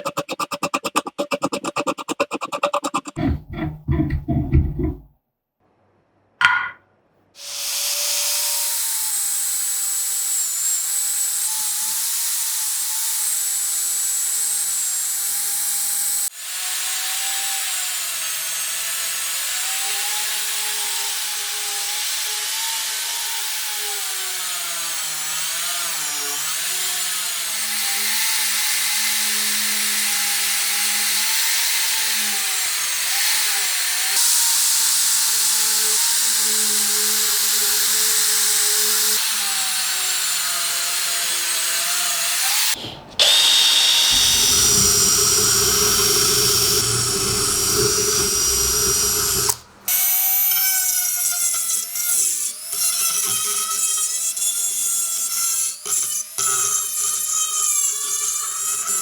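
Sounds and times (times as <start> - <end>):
power tool grinding metal: 0.0 - 5.0, 22.9 - 59.0.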